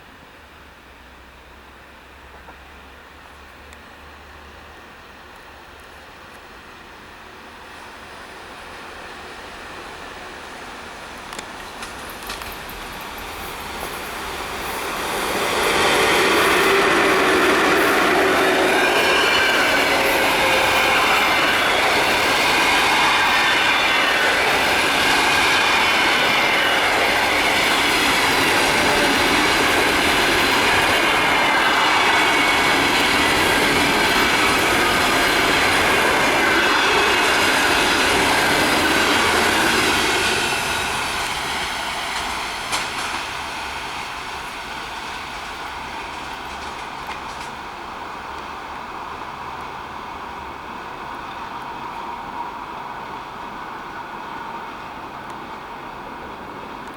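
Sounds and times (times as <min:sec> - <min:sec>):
train wheels clattering: 0:11.2 - 0:48.5
high wheel squeal: 0:13.5 - 0:42.2.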